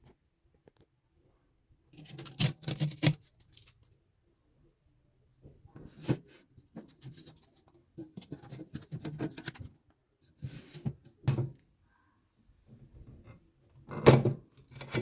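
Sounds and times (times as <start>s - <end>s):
objects being handled: 2.0s - 3.9s, 5.7s - 11.2s.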